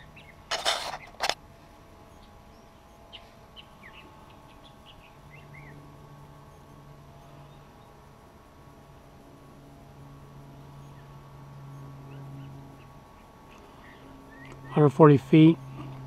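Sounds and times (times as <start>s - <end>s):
small birds chirping: 0.0s - 1.3s, 2.0s - 8.1s, 10.7s - 16.0s
faint steady hum: 0.0s - 16.0s.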